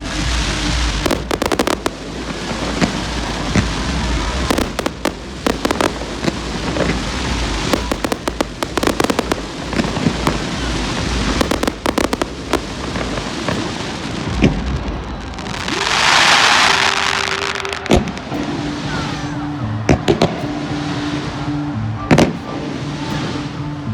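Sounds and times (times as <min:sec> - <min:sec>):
continuous low rumble: 0:00.0 - 0:15.6
fireworks crackling pops: 0:00.0 - 0:18.8.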